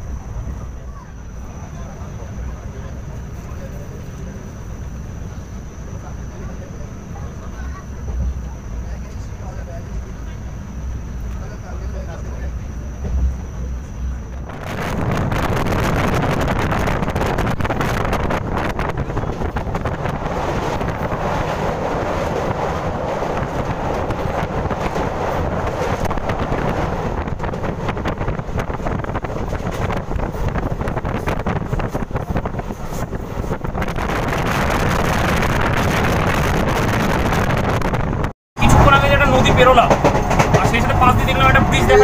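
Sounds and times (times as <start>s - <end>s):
train rumbling at speed: 0.0s - 42.0s
wind buffeting microphone: 9.8s - 42.0s
wheels clattering on rails: 14.7s - 37.4s, 38.6s - 42.0s.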